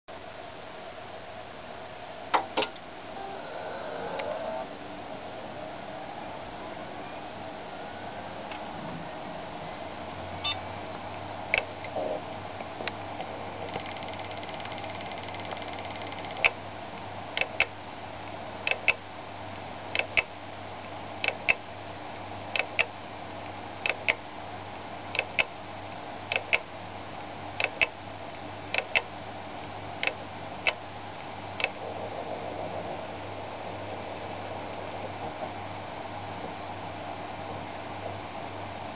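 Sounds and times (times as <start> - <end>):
hard drive whir: 0.2 - 38.9
hard drive clicking: 10.4 - 32.2.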